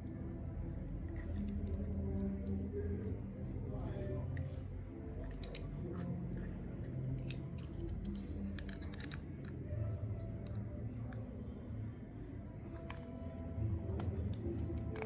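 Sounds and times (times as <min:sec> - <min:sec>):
soft background music: 0:00.0 - 0:15.0
hand tools clicking and snipping: 0:05.2 - 0:09.6.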